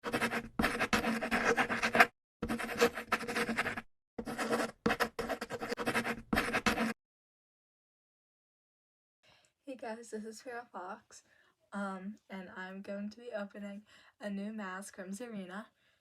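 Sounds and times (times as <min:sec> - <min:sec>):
scratching and rubbing noise: 0:00.0 - 0:07.0.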